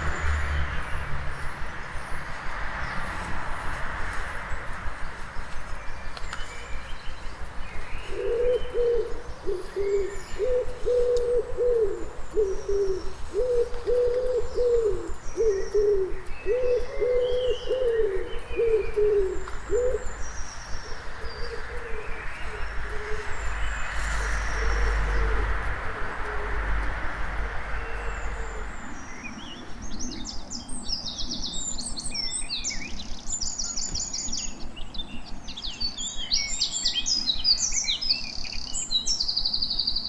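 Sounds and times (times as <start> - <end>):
low rumble of traffic: 0.0 - 40.0
songbirds chirping and whistling: 0.0 - 40.0
pigeon cooing: 8.1 - 20.1.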